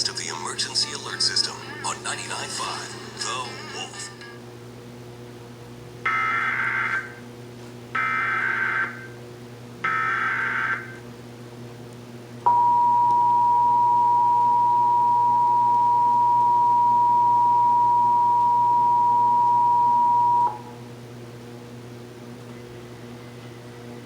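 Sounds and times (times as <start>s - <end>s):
two-tone alarm: 6.1s - 7.2s, 8.0s - 9.1s, 9.8s - 11.0s, 12.5s - 20.8s.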